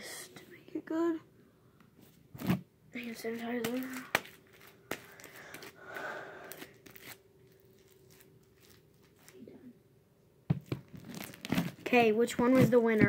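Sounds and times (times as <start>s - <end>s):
slime squishing and crackling: 6.5s - 9.5s, 10.6s - 13.0s.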